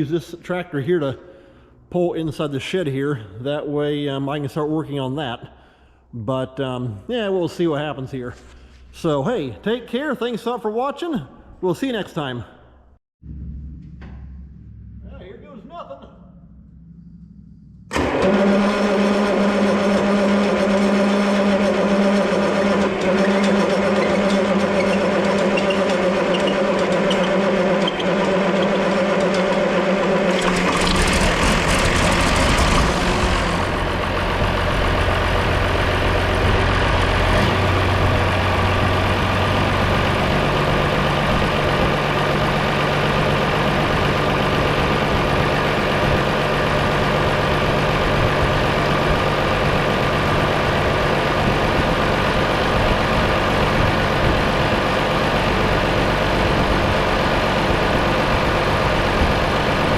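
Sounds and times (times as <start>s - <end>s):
steady tones: 13.2s - 18.3s
diesel tractor engine starting: 13.2s - 59.9s.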